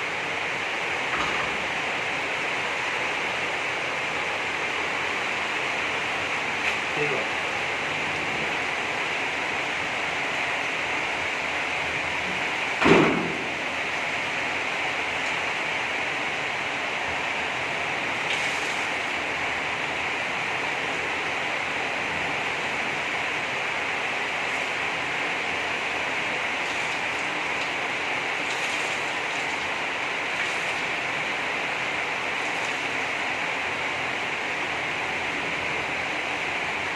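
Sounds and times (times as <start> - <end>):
heavy rain hissing: 0.0 - 36.9
thump: 12.8 - 13.5.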